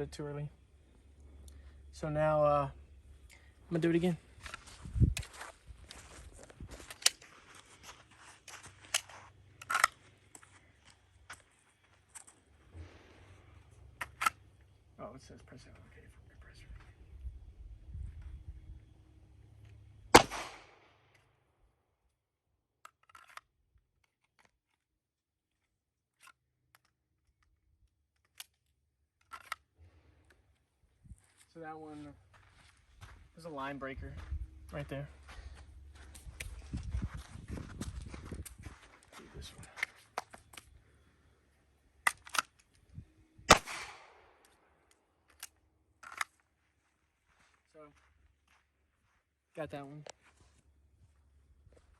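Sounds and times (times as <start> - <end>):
handgun shot: 20.1 - 20.9, 43.5 - 44.4.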